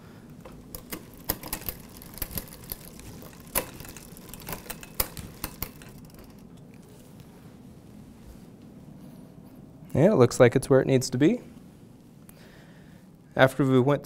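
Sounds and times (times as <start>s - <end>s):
bike chain moving across cogs: 0.4s - 6.7s.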